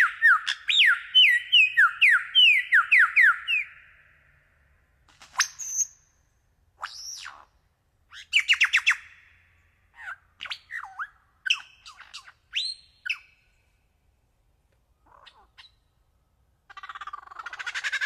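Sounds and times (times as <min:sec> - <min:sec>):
bird calling: 0:00.0 - 0:04.3, 0:15.0 - 0:16.0, 0:16.7 - 0:18.0.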